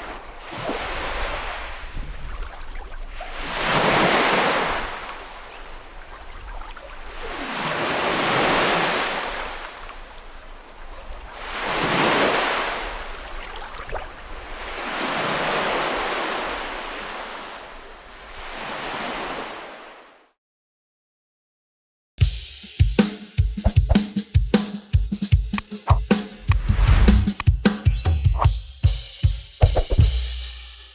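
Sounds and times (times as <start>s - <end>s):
sea waves washing onto beach: 0.0s - 20.2s.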